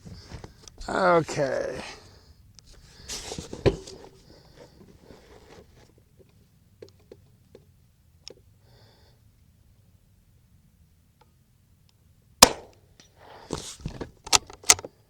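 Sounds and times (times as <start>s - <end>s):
rifle handling rustle: 2.6s - 6.4s, 13.0s - 15.0s
short scrape: 3.0s - 4.1s.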